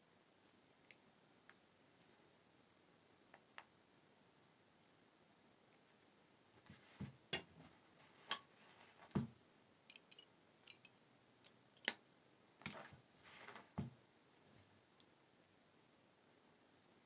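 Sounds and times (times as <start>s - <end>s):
metal tools clicking and tapping: 9.9s - 12.0s.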